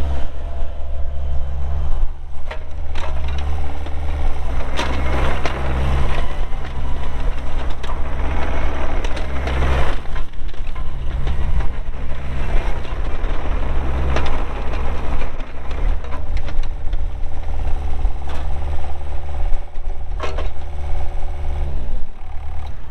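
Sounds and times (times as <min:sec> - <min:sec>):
diesel engine running: 0:00.0 - 0:22.9
hydraulic whine: 0:00.0 - 0:22.9.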